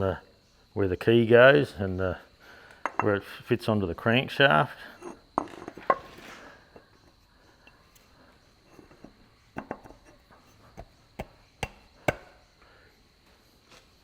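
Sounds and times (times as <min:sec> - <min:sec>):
sharp light knocks on metal: 0:11.2 - 0:12.3.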